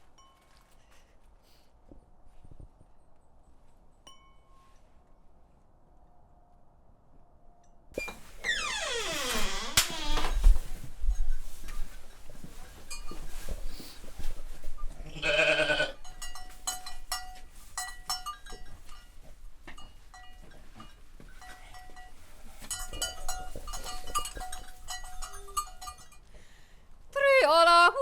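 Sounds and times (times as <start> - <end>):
farm animal bleating: 14.8 - 16.0
livestock bells clanking: 15.9 - 26.5.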